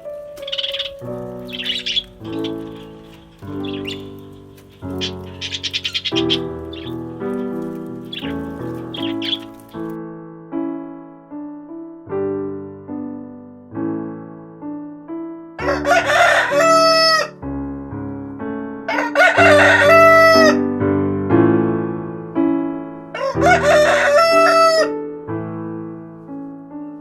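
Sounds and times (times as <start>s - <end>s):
piano music: 0.0s - 27.0s
rooster crowing: 15.6s - 17.4s, 18.9s - 20.6s, 23.2s - 24.9s.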